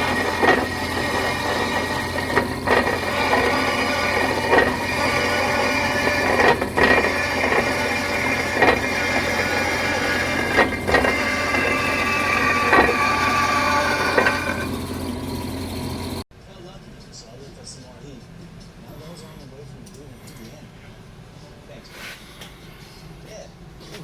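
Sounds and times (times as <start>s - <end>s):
mechanical whine: 0.0s - 16.2s.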